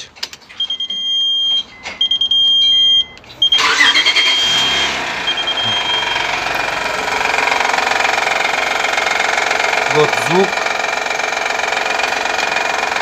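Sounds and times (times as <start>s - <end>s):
high electronic beep: 0.6s - 7.0s
car engine cranking and starting: 3.0s - 13.0s
engine running with fast rattle: 3.3s - 13.0s.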